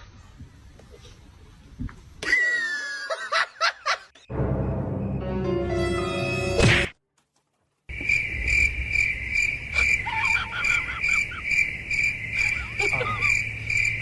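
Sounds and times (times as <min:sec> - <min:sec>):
crickets chirping: 0:04.3 - 0:05.8, 0:07.9 - 0:14.0.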